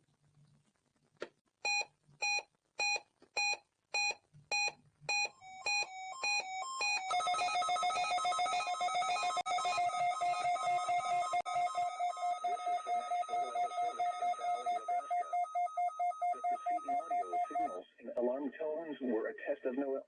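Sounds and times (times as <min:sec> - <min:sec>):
electronic alarm beeps: 0:01.7 - 0:17.8
fast warbling alarm trill: 0:05.6 - 0:17.8.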